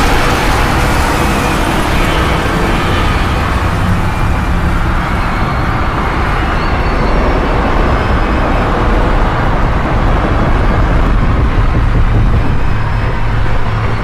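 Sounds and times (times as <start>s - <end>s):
deep rumble: 0.0s - 14.0s
rushing noise: 0.0s - 14.0s.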